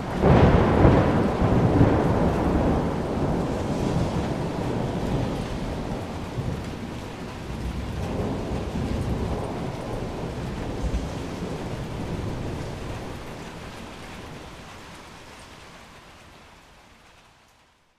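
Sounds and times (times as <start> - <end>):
low thunder rumble: 0.0 - 14.9
heavy rain: 0.0 - 17.9.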